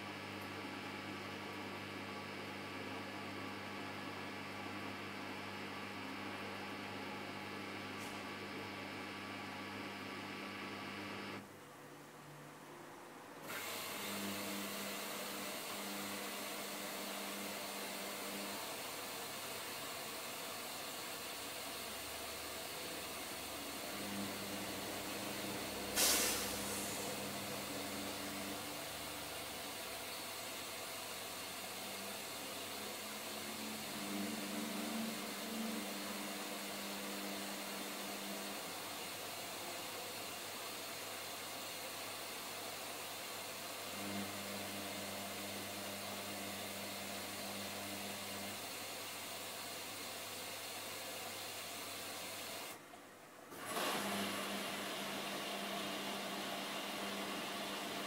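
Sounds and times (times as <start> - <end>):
washing machine humming: 13.4 - 58.0
hiss: 25.7 - 29.3.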